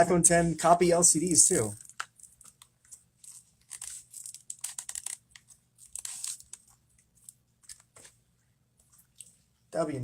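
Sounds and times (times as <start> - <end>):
plastic crinkling and clicking: 1.7 - 8.2.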